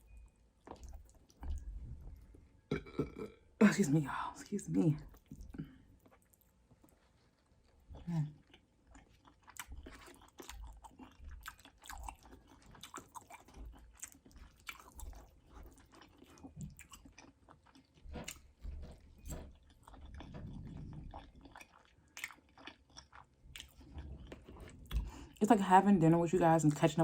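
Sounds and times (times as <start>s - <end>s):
person chewing food: 0.0s - 3.4s, 5.0s - 25.4s.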